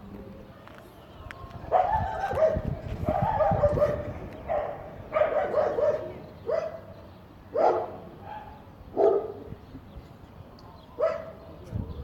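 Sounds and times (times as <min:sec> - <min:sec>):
dog barking: 0:01.7 - 0:06.9, 0:07.6 - 0:09.4, 0:11.0 - 0:11.4.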